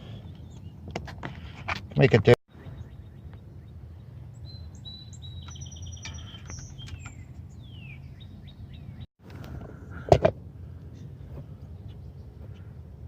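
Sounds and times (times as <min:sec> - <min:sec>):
small birds chirping: 0:00.0 - 0:01.6, 0:02.5 - 0:09.1, 0:10.7 - 0:13.0
low background rumble: 0:06.7 - 0:13.0.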